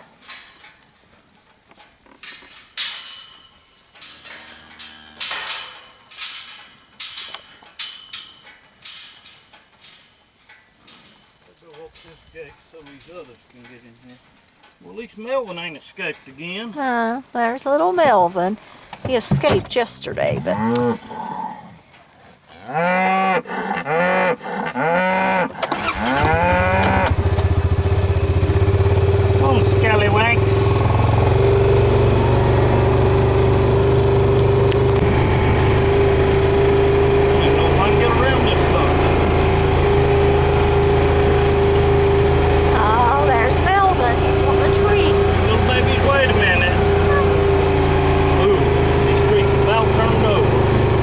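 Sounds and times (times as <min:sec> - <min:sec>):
metallic clanks and rattles: 0:02.1 - 0:13.0
cattle mooing: 0:04.2 - 0:05.6, 0:20.3 - 0:21.8, 0:22.5 - 0:27.3, 0:28.9 - 0:50.3
engine idling: 0:25.6 - 0:51.0.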